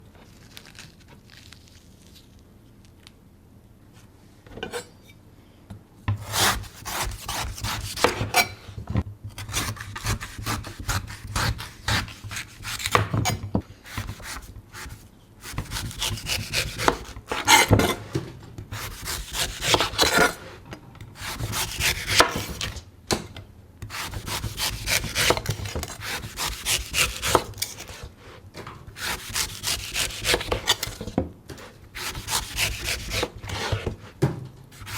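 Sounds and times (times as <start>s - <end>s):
knife scraping coconut husk: 6.2s - 8.6s, 9.4s - 13.0s, 13.9s - 18.0s, 18.7s - 20.5s, 21.2s - 22.7s, 23.9s - 28.1s, 29.0s - 31.0s, 31.6s - 33.9s.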